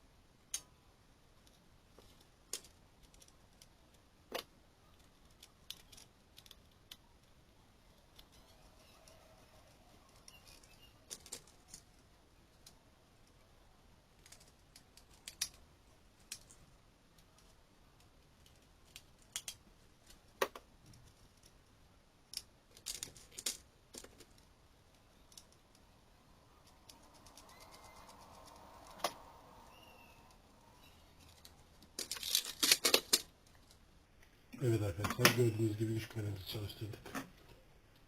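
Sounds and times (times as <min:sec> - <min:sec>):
faint hum: 0:24.0 - 0:32.1.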